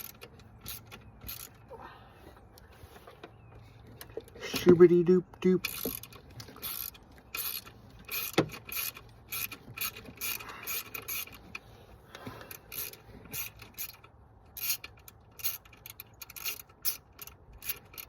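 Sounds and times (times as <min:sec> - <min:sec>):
hand ratchet clicking: 0:00.0 - 0:01.6, 0:05.6 - 0:11.5, 0:12.5 - 0:18.0.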